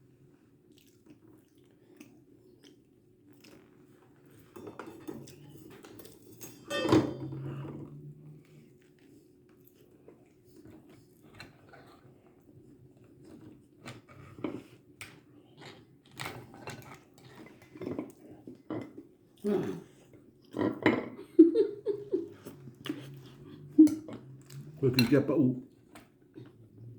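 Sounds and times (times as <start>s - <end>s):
chewing: 0.6s - 6.2s, 22.2s - 26.7s
dishes and cutlery clinking: 4.3s - 8.4s, 22.2s - 25.4s.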